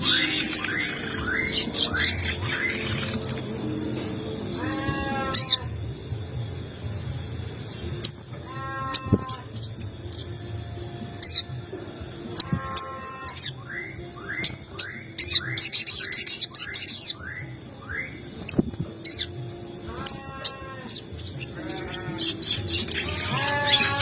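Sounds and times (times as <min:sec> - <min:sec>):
bird whistling rising notes: 0:00.0 - 0:03.4, 0:12.4 - 0:19.3
high shrill bird chattering: 0:00.0 - 0:03.5, 0:12.4 - 0:24.0
harsh rasping bird calls: 0:00.0 - 0:03.6, 0:04.4 - 0:05.8, 0:07.8 - 0:10.3, 0:12.2 - 0:24.0.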